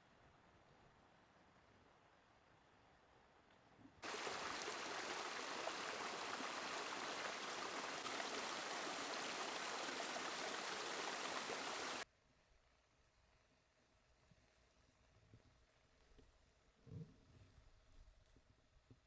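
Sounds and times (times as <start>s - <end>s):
stream water rushing: 4.0s - 12.0s.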